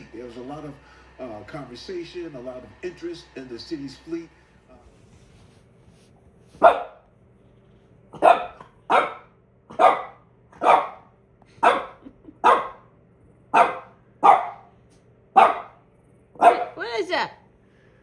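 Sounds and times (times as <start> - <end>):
dog barking: 6.5 - 7.1, 8.1 - 12.9, 13.5 - 16.9.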